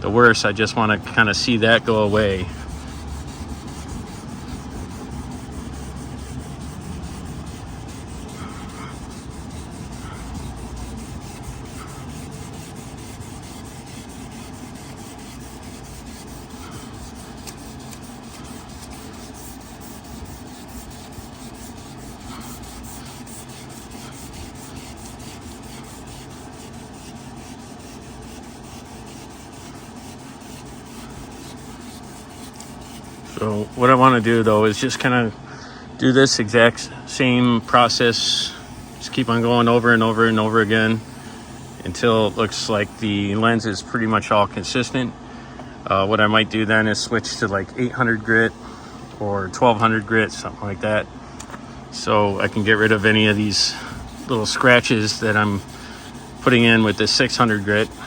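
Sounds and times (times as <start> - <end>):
sandpaper rubbing on plastic: 1.0 - 35.1, 37.6 - 43.2, 48.4 - 48.6, 52.2 - 58.0.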